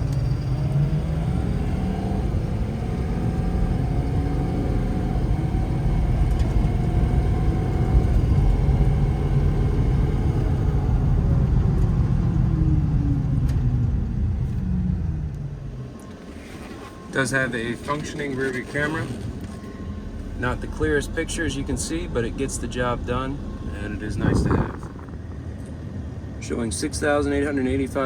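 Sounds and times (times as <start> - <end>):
truck diesel engine driving: 0.0 - 15.9, 17.1 - 25.6.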